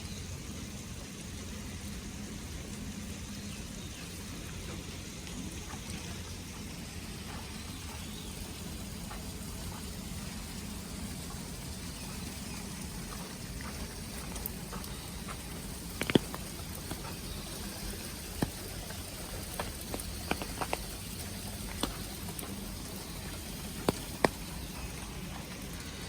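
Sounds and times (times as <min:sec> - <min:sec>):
low steady hum: 0:00.0 - 0:26.0
water trickling and dripping: 0:00.0 - 0:26.0
faint ticks: 0:12.0 - 0:26.0
sharp clicks: 0:15.9 - 0:22.6.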